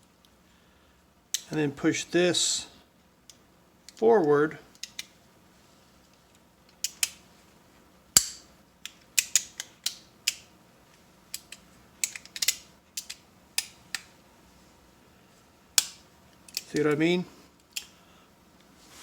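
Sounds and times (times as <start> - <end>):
small metal parts clicking: 4.7 - 5.1, 6.7 - 7.2, 8.2 - 10.5, 11.3 - 14.0, 15.8 - 16.9.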